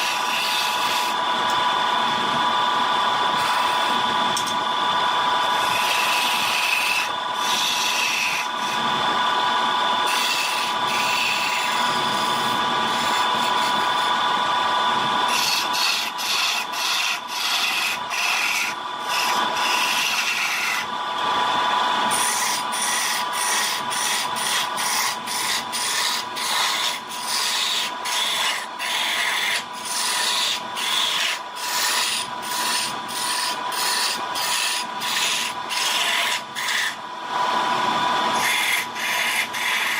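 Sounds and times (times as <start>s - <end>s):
tool scraping spinning wood: 0.0s - 39.9s
wood lathe whining: 0.0s - 39.9s.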